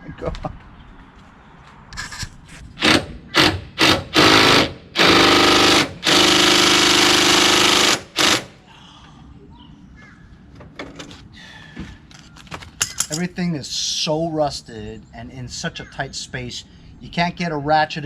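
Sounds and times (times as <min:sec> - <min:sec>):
power driver whirring: 0:02.8 - 0:08.6.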